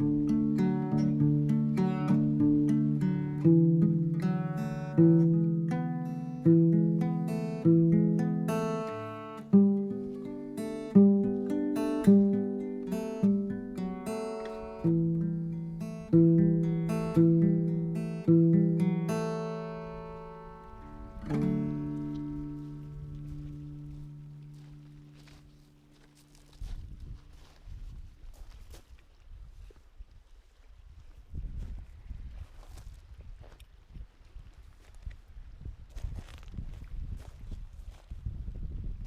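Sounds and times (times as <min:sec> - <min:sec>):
acoustic guitar strummed chords: 0:00.0 - 0:26.6.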